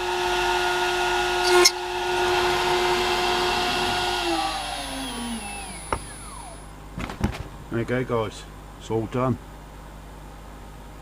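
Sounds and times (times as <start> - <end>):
router cutting burst: 0.0 - 6.7
router spindle whining: 0.0 - 6.8.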